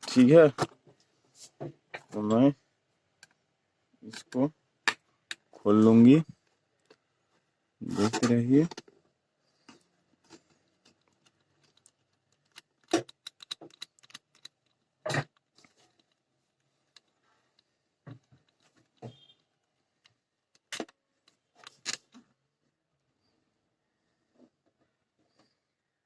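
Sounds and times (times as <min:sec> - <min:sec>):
screwdriver and screws clinking: 0:10.9 - 0:16.2.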